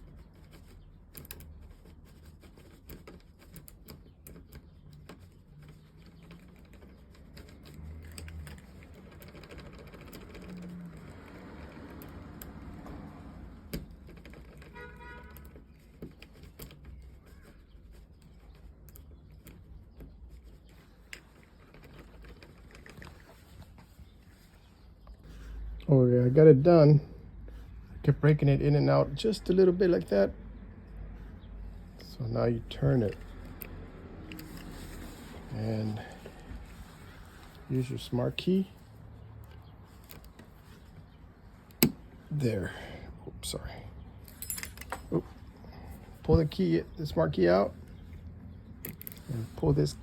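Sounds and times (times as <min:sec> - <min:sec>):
key clicking and scraping in lock: 0:00.0 - 0:23.3, 0:32.9 - 0:38.5, 0:39.4 - 0:42.2, 0:48.0 - 0:50.0.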